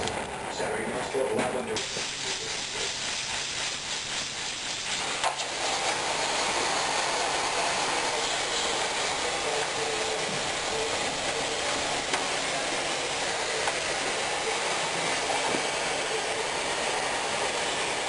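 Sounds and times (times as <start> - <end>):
gas torch flame hissing: 1.7 - 18.0.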